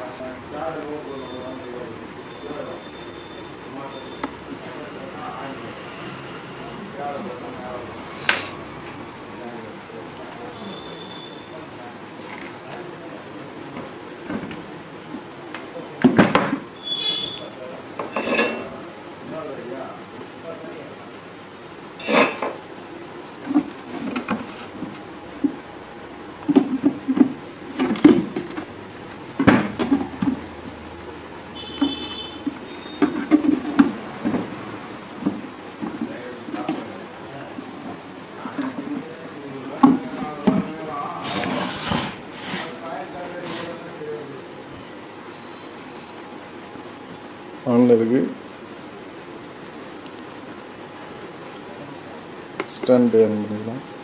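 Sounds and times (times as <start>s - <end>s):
tools knocking and clattering: 31.8s - 34.5s.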